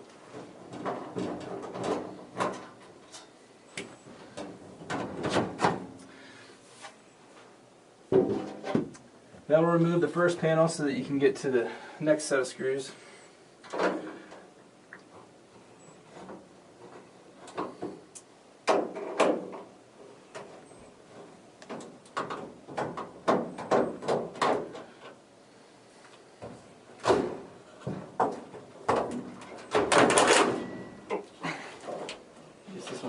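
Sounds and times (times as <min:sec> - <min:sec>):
sheet-metal panels knocking: 0:21.7 - 0:24.9, 0:27.0 - 0:30.8.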